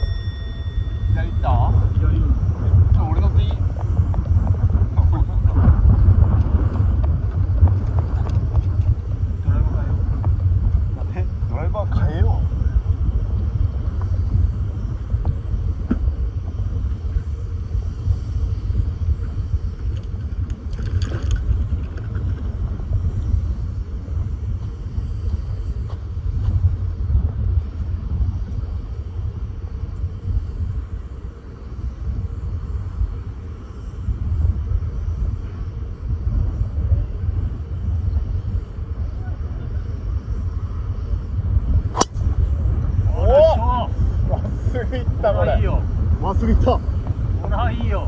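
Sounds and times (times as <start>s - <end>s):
wind buffeting microphone: 0.0s - 48.0s.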